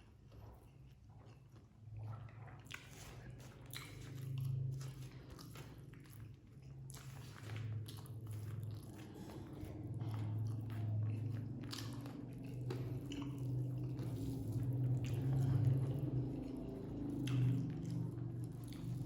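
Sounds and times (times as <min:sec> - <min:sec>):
person chewing food: 0:00.1 - 0:19.0
low hum: 0:08.2 - 0:19.0.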